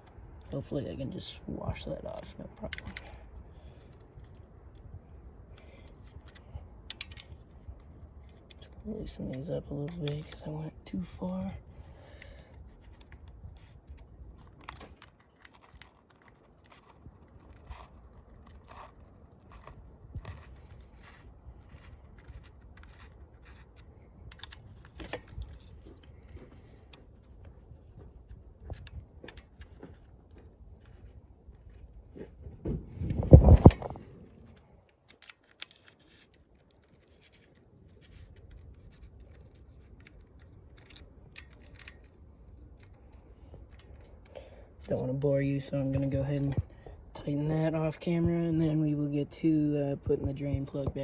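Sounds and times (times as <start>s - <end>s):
hand tool clicks and scrapes: 5.6s - 10.4s, 12.2s - 32.0s, 33.0s - 44.9s.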